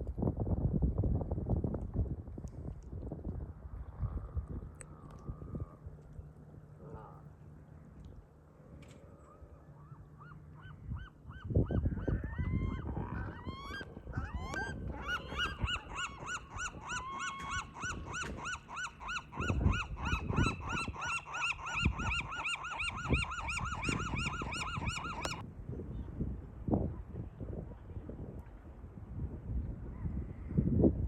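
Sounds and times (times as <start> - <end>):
geese honking: 12.5 - 25.4.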